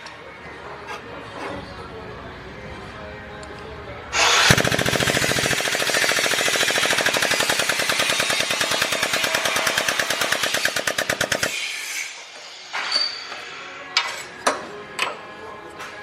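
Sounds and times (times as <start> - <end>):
power tool hammering metal: 4.2 - 13.2.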